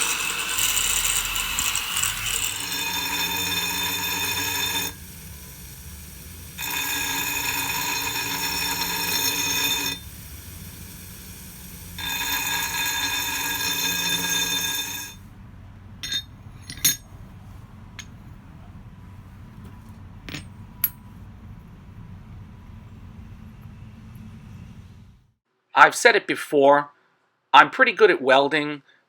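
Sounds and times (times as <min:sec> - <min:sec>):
power tool whining on steel: 0:00.0 - 0:15.2
sharp metallic clinks: 0:16.0 - 0:17.1.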